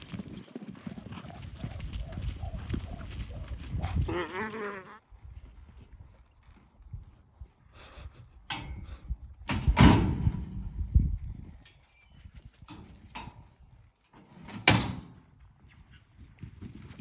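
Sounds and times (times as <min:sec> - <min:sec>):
horse hoofbeats: 0:00.0 - 0:07.6.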